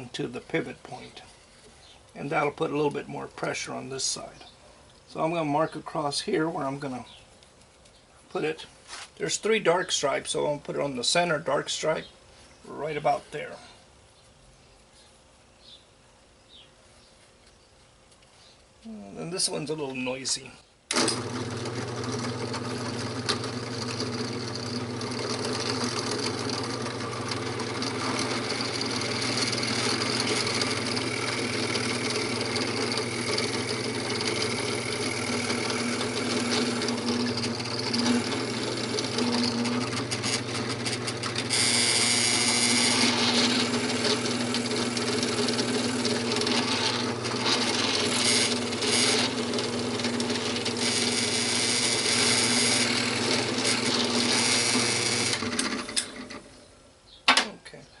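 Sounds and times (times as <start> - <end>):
drill bit cutting wood: 20.9 - 56.4
drill press motor hum: 20.9 - 56.5.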